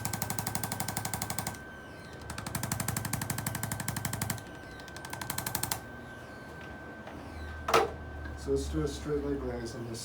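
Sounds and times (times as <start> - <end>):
rapid electric tapping: 0.0 - 1.6, 2.2 - 5.9.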